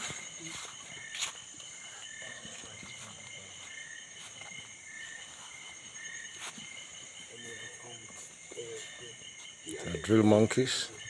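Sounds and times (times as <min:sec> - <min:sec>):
insects and frogs chorus: 0:00.0 - 0:11.0.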